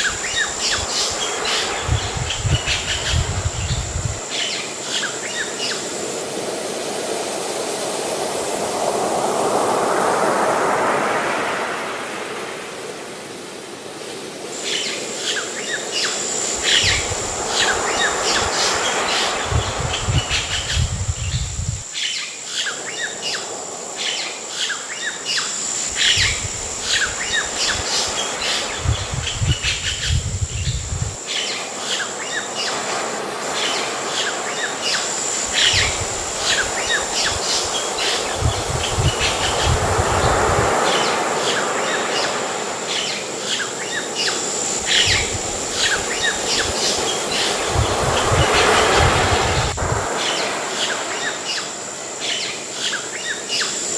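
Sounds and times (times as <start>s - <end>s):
birds chirping: 0.0s - 5.9s, 14.7s - 22.2s, 25.1s - 32.8s, 34.3s - 42.4s, 43.0s - 51.7s
sea waves washing in: 0.0s - 21.9s, 25.8s - 52.8s
high insect buzz: 0.0s - 53.9s.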